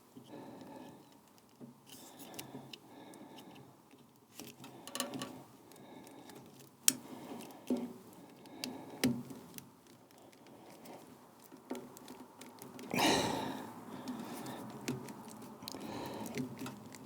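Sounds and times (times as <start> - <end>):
small clicks and taps: 3.5 - 5.4, 6.1 - 12.9, 14.0 - 17.0.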